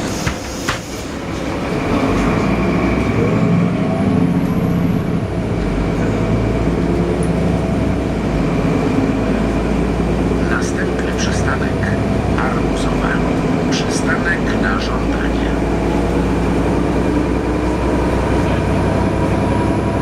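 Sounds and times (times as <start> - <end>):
bus engine drone: 0.0 - 20.0.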